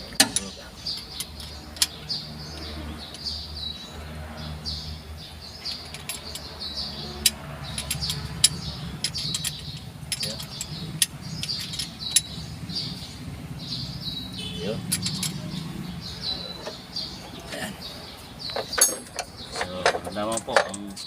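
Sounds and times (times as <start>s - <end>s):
small birds chirping: 0.0s - 21.0s.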